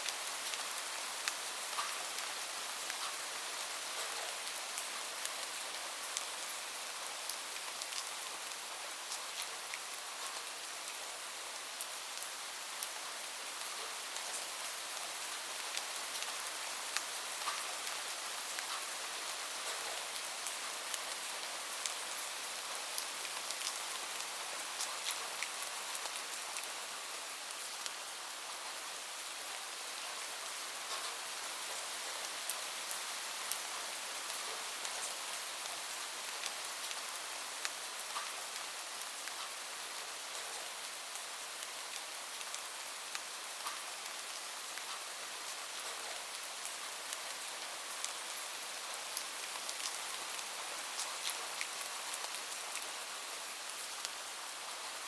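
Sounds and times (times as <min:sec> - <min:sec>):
raindrops ticking on a surface: 0:00.0 - 0:11.0, 0:11.8 - 0:28.8, 0:30.8 - 0:55.0
rain hiss: 0:00.0 - 0:55.0.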